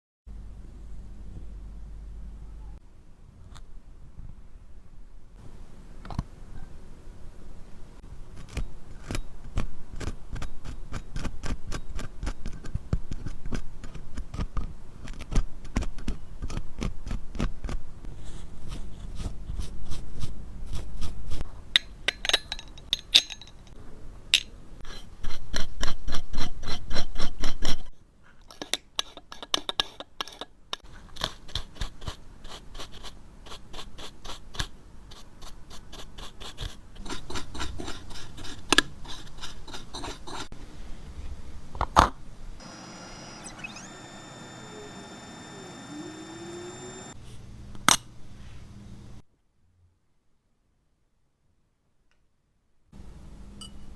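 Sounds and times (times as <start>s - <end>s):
small tools scraping and clicking: 21.8s - 23.8s, 28.4s - 40.5s.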